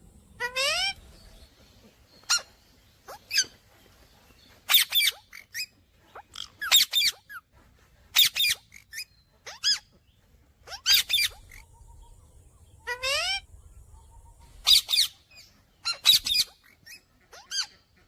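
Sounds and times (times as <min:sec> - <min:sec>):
parakeet chirping: 0:04.7 - 0:07.4, 0:08.1 - 0:09.9, 0:10.6 - 0:12.2, 0:12.8 - 0:17.8.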